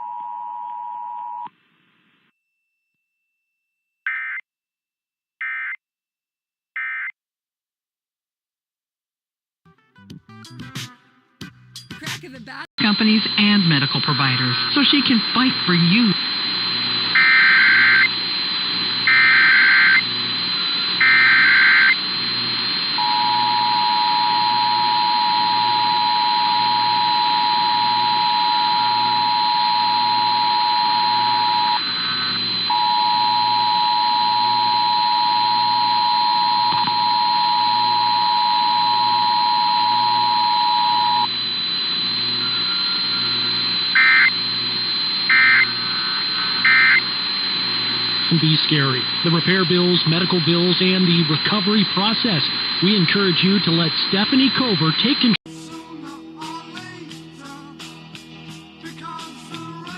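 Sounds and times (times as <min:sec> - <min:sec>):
high whine: 0:12.8 - 0:55.4
buzzy data bursts: 0:38.9 - 0:54.9.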